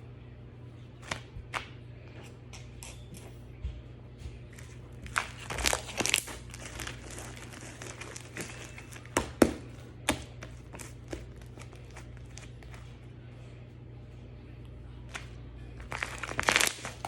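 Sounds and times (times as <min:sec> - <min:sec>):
slime crackling and popping: 0:05.0 - 0:10.2, 0:15.8 - 0:17.0.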